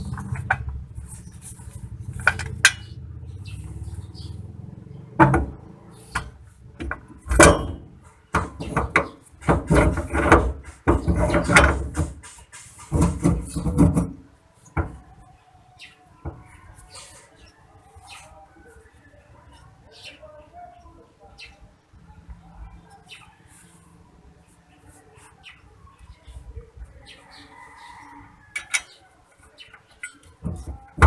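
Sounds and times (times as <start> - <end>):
metal tools clanking: 2.2 - 3.0.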